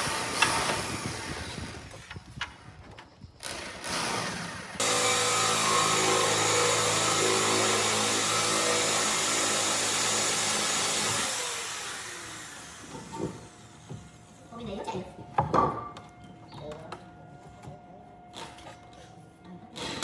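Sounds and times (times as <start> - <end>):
electric power tool running: 3.4 - 13.8.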